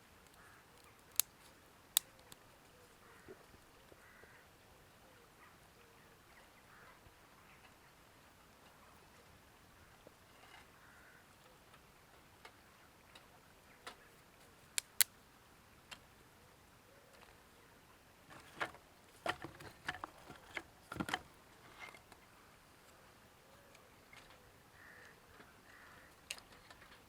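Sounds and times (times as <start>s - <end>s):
faint clicks and ticks: 0.2s - 1.3s, 14.8s - 15.1s.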